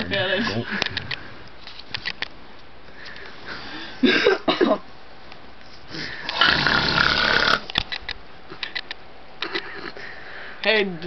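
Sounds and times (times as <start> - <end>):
man snoring: 6.3 - 7.7.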